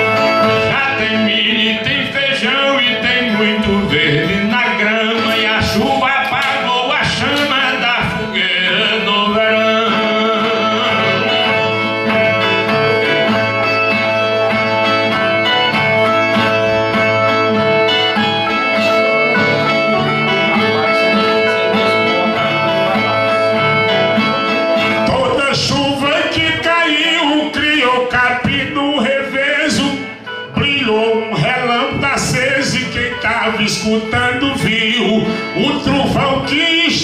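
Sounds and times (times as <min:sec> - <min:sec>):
viola playing: 0:00.0 - 0:28.3
plucked string notes and strumming: 0:00.0 - 0:37.0.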